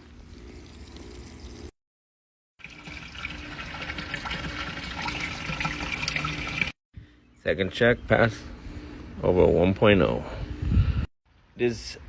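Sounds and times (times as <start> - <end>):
water running and hissing: 0.0 - 1.7.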